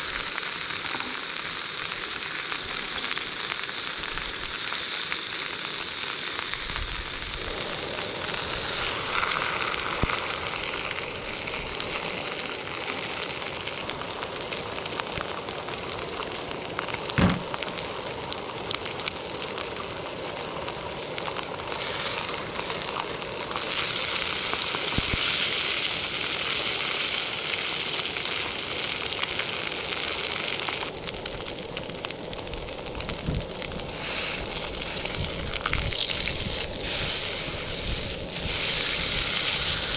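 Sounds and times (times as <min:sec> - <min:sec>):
steak sizzling and crackling: 0:00.0 - 0:39.9
sharp knock: 0:17.2 - 0:17.5.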